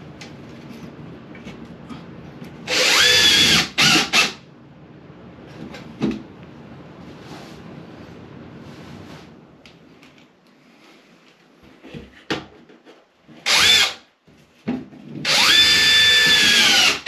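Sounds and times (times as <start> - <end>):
power drill driving a screw: 2.7 - 4.4, 13.4 - 14.0, 15.3 - 17.0.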